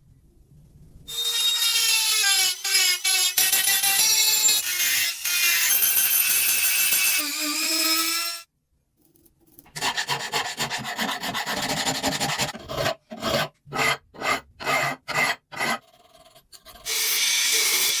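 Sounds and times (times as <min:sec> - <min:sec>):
file rasping over metal: 0:09.8 - 0:18.0.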